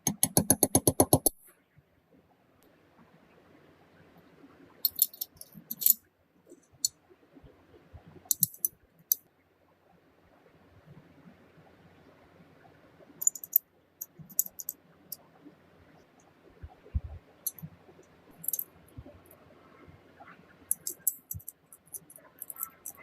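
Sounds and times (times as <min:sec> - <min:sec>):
metal parts clicking: 0:04.8 - 0:06.0, 0:08.3 - 0:08.7, 0:13.2 - 0:14.7, 0:18.4 - 0:18.7, 0:20.7 - 0:23.0
dull low knocks: 0:16.6 - 0:17.2.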